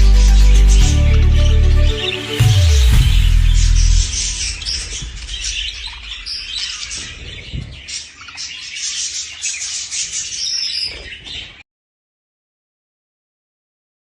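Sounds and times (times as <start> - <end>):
small birds chirping: 0.0 - 11.6.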